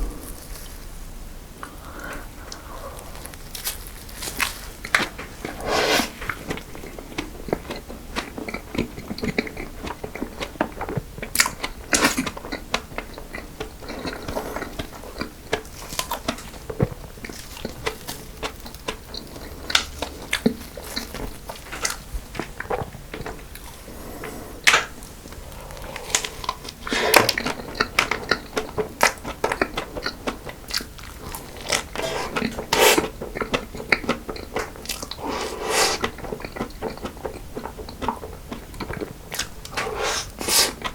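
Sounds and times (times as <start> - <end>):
eating cake with crunching chewing: 0.0 - 40.9.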